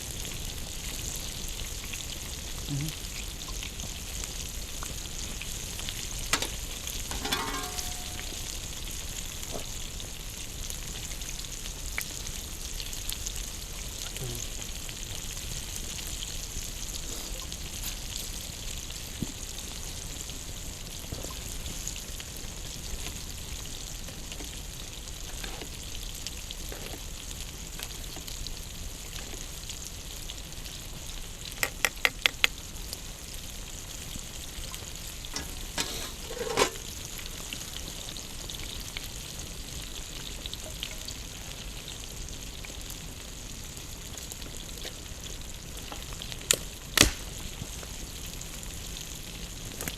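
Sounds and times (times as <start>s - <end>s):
food sizzling over a campfire: 0.0s - 49.9s
sharp clicks: 31.6s - 32.5s.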